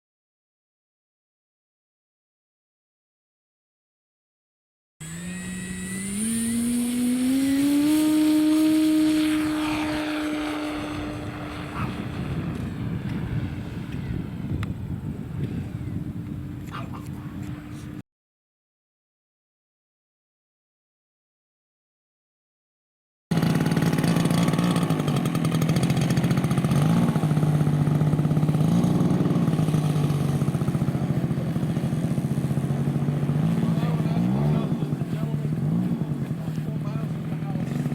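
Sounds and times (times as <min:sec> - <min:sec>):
model airplane engine throttling up: 0:05.0 - 0:16.6, 0:23.3 - 0:37.9
noisy rumble: 0:05.0 - 0:18.0, 0:23.3 - 0:37.9.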